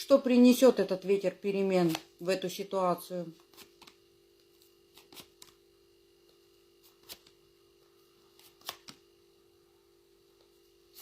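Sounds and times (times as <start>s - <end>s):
tarot cards flicking and tapping: 3.5s - 4.0s.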